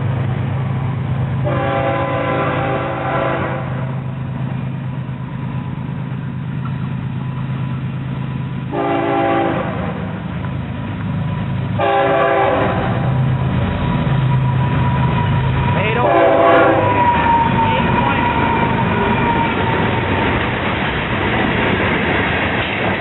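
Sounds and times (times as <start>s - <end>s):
diesel locomotive rumble: 0.0s - 23.0s
train air horn: 1.4s - 4.0s, 8.7s - 10.1s, 11.8s - 13.1s, 15.9s - 18.3s.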